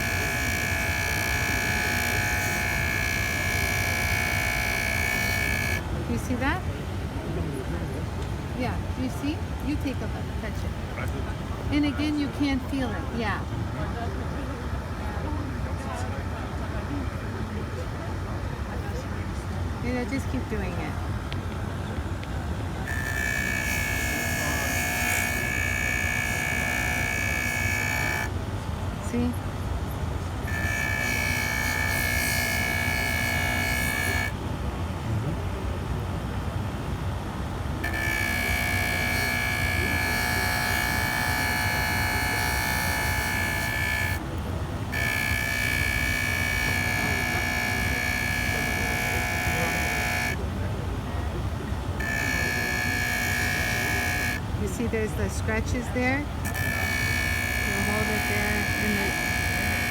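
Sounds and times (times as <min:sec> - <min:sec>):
polishing tool whining: 0:00.0 - 0:06.8, 0:22.8 - 0:28.4, 0:30.4 - 0:34.4, 0:37.8 - 0:50.4, 0:51.9 - 0:59.9.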